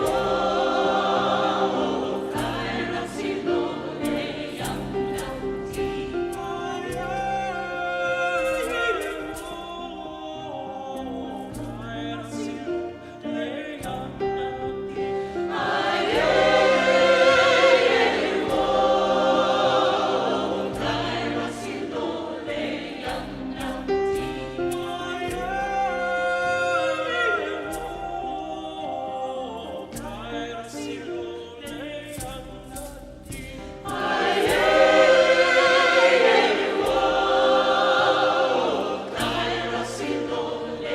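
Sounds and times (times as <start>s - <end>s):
choir singing: 0.0s - 9.5s, 12.6s - 31.6s, 33.6s - 40.9s.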